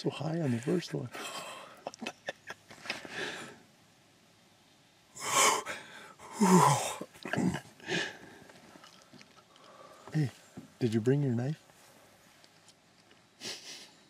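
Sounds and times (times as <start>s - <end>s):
man breathing hard: 3.1s - 3.6s, 5.2s - 7.0s, 7.8s - 8.5s.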